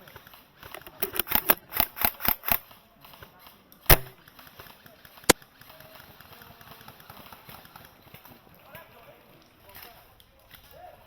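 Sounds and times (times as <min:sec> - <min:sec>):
airsoft gunshots: 0:03.9 - 0:04.2.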